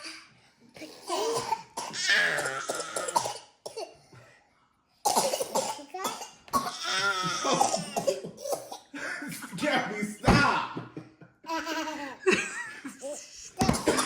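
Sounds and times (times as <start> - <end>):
toddlers coughing: 0.8 - 4.0, 5.1 - 9.0, 13.0 - 14.0.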